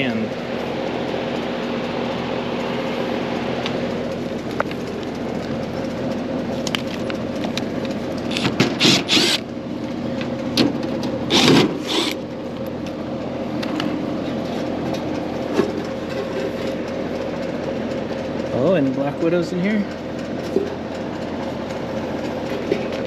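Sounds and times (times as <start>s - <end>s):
fan motor humming: 0.0s - 23.0s.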